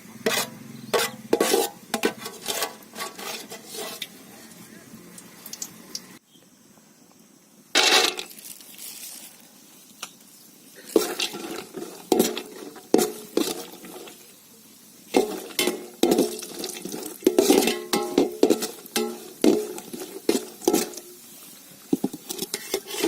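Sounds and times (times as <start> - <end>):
metal spoon scraping a pan: 0.2 - 4.2, 10.9 - 14.2, 15.1 - 23.0.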